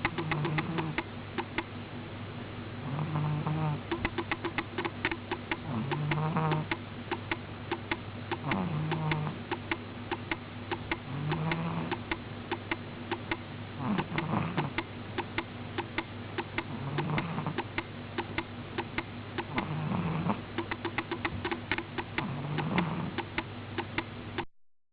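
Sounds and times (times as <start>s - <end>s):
sharp ticks: 0.0s - 1.7s, 3.9s - 13.4s, 14.0s - 19.7s, 20.6s - 24.1s
cat snoring: 0.1s - 1.0s, 2.8s - 4.0s, 5.6s - 6.8s, 8.4s - 9.4s, 11.0s - 12.0s, 13.8s - 14.8s, 16.6s - 17.7s, 19.4s - 20.4s, 22.2s - 23.3s.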